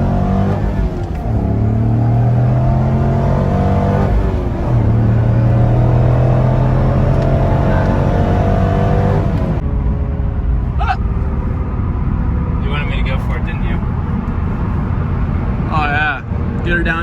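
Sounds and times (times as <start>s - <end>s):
gear change: 0.0s - 9.6s
car engine accelerating: 0.0s - 17.0s.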